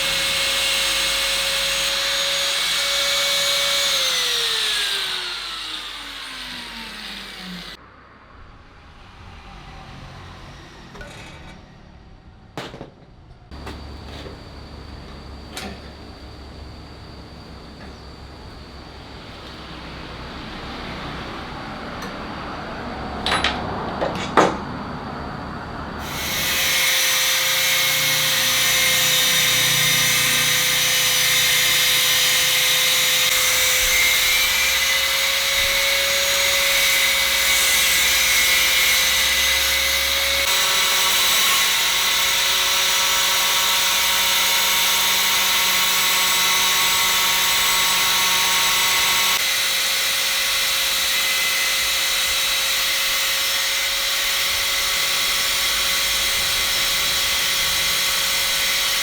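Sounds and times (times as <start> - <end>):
power tool whining: 0.0 - 7.8, 26.0 - 59.0.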